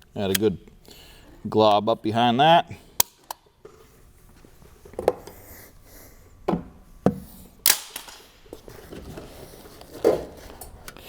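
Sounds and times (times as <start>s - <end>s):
tools clicking and knocking: 6.5s - 8.3s.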